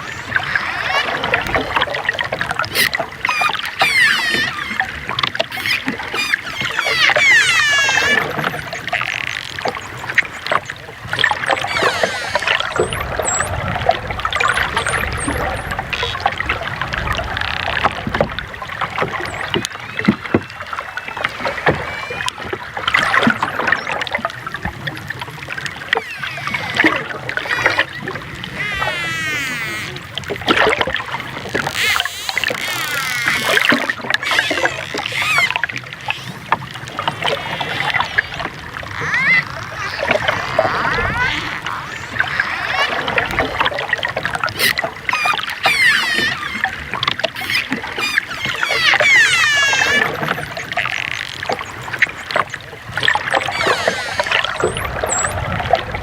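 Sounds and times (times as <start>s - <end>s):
dolphins whistling: 0.0s - 2.0s, 2.6s - 16.2s, 19.1s - 24.6s, 25.6s - 55.6s
dolphin clicks: 2.6s - 13.6s, 25.8s - 43.8s, 44.4s - 55.4s.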